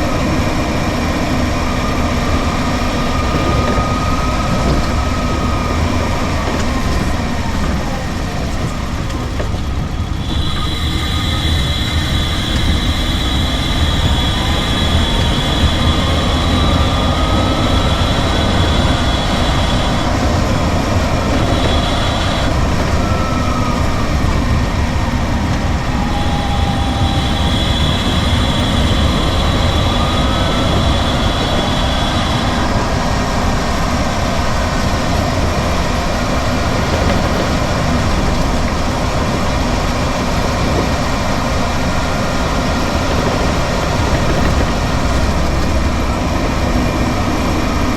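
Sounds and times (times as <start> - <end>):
road and wind rumble: 0.0 - 47.9
electric motor whine rising: 10.2 - 34.1.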